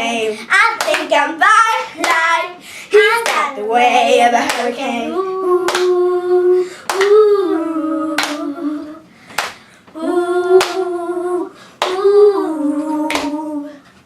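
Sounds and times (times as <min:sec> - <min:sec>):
sharp hand claps: 0:00.8 - 0:01.1, 0:03.2 - 0:03.5, 0:05.7 - 0:06.0, 0:06.9 - 0:07.2, 0:08.2 - 0:08.4, 0:09.3 - 0:09.6, 0:10.6 - 0:10.8, 0:13.1 - 0:13.4
woman singing unaccompanied: 0:03.0 - 0:09.0, 0:10.0 - 0:13.9.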